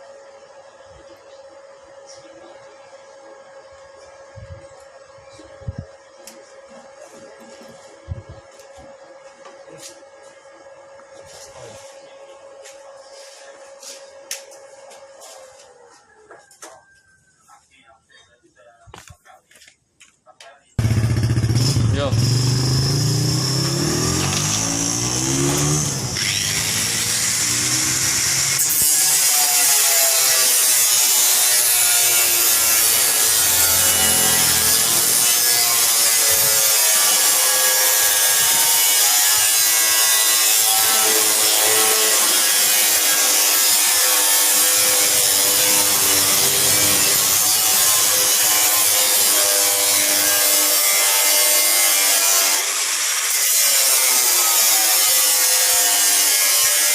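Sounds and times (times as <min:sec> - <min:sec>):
power tool hissing and whining: 0:20.8 - 0:56.9.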